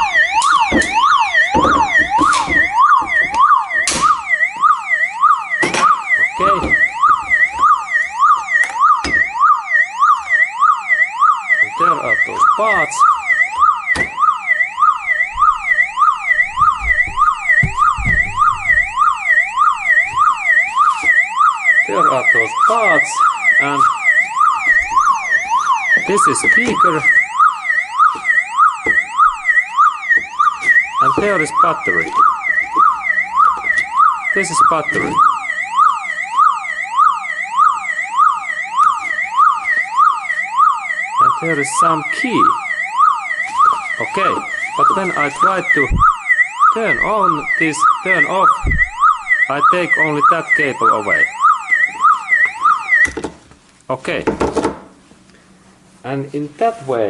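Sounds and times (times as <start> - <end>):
car alarm siren warbling: 0.0 - 53.2
low knocks: 16.5 - 19.0, 48.6 - 49.0.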